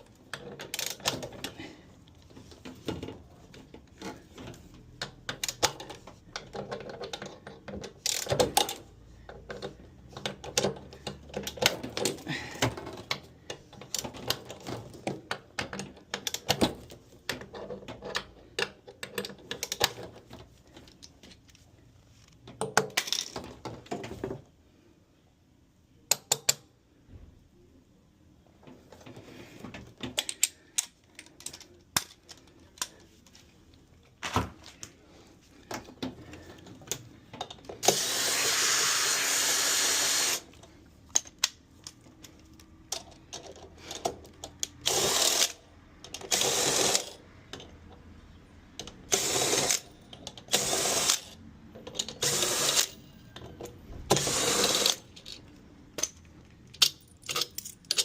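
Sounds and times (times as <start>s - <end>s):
clicks and knocks of tools: 0.2s - 24.4s, 28.7s - 35.0s, 35.6s - 38.0s, 40.5s - 48.0s, 48.8s - 58.0s
power tool running: 37.8s - 40.4s, 52.2s - 52.9s, 54.2s - 54.9s.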